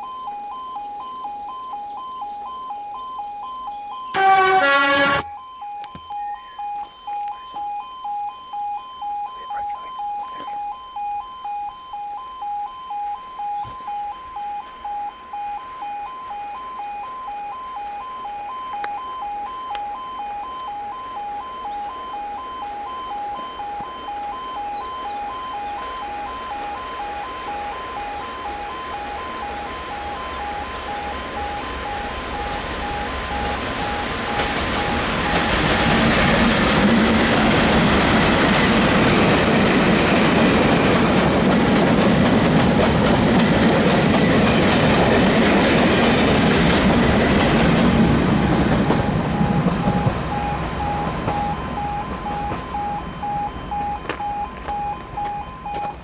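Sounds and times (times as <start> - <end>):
two-tone level crossing alarm: 0.0 - 56.0
diesel train passing: 2.8 - 5.4, 13.0 - 56.0
wheels running on rails: 17.6 - 56.0.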